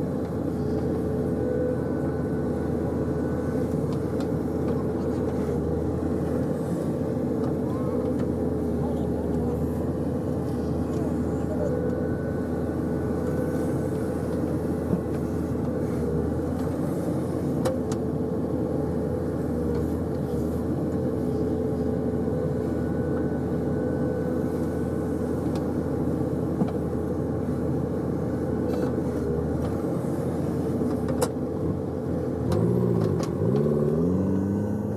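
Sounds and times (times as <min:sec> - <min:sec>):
diesel engine running: 0:00.0 - 0:34.9.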